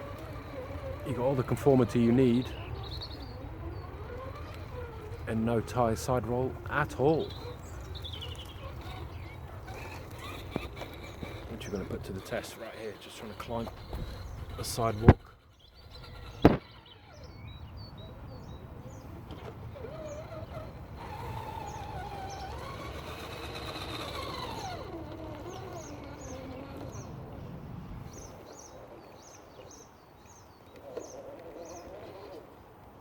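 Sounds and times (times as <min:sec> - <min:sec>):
electric motor whining: 0:00.0 - 0:17.6, 0:19.0 - 0:27.2
small birds chirping: 0:00.0 - 0:32.4
sharp knock: 0:16.4 - 0:16.6.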